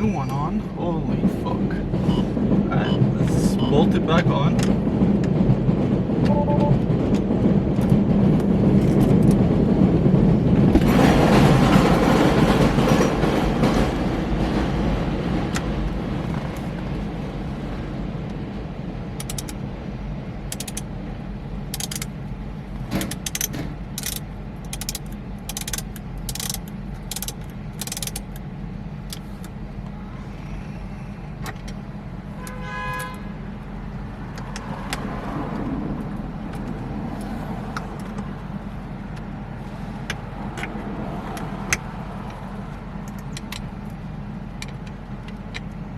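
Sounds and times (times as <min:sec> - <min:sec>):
sharp metallic clicks: 0:19.2 - 0:19.6, 0:20.5 - 0:20.9, 0:21.7 - 0:22.2, 0:22.9 - 0:29.6.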